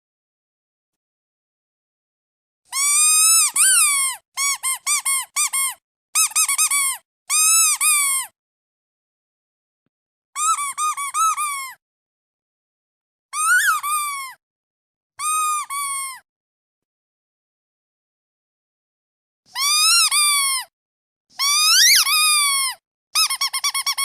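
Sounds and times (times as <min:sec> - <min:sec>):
rubber duck toy squeaking: 0:02.7 - 0:08.3, 0:10.4 - 0:11.8, 0:13.4 - 0:14.4, 0:15.2 - 0:16.2, 0:19.5 - 0:20.7, 0:21.4 - 0:24.0.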